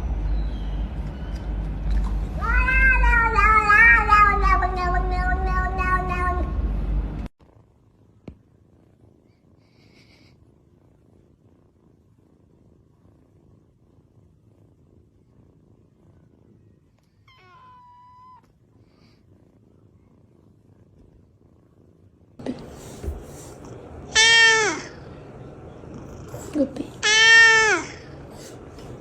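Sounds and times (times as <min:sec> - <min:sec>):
cat purring: 0:01.6 - 0:29.0
high-pitched cat meow: 0:02.4 - 0:06.5, 0:17.2 - 0:18.5, 0:24.2 - 0:25.0, 0:27.0 - 0:28.0.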